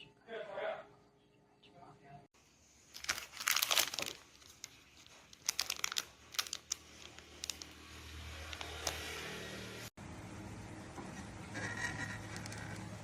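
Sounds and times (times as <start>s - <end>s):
packaging crinkling: 2.8s - 9.2s.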